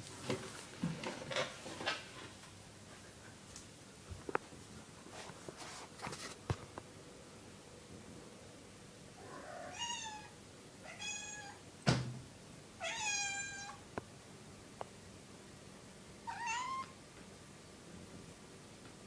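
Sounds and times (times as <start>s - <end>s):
cat meowing: 9.2s - 11.6s, 12.8s - 13.8s, 16.2s - 17.0s.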